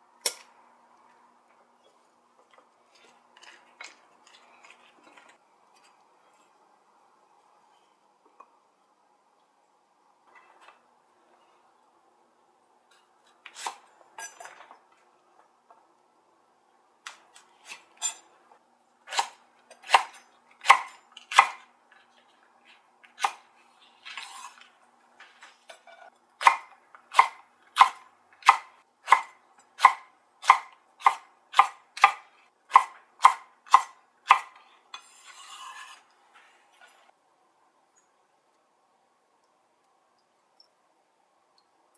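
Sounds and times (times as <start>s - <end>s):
knife chopping on cutting board: 26.4s - 34.5s
soft scraping: 35.0s - 37.1s.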